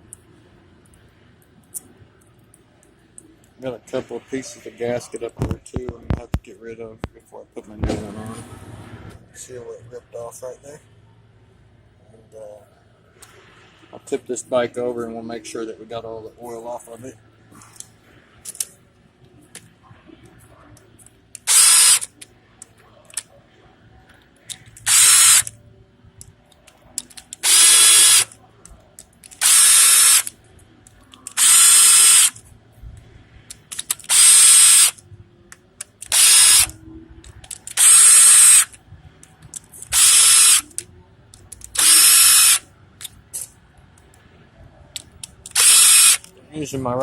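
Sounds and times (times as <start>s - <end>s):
power drill bursts: 21.5s - 22.1s, 24.8s - 25.5s, 27.4s - 28.3s, 29.4s - 30.3s, 31.3s - 32.4s, 34.0s - 35.0s, 36.1s - 36.7s, 37.7s - 38.7s, 39.9s - 40.7s, 41.8s - 42.6s, 45.5s - 46.3s.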